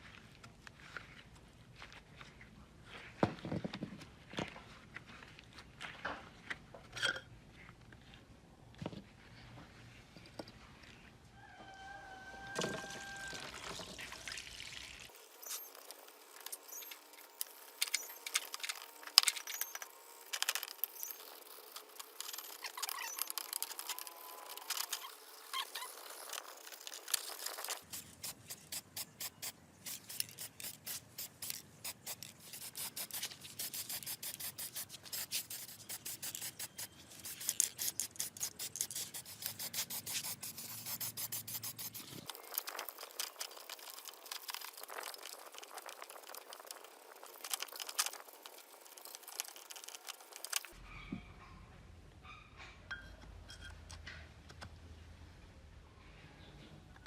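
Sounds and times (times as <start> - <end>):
quick regular rubbing strokes: 15.3 - 50.7
hand rubbing and scraping: 15.3 - 50.8.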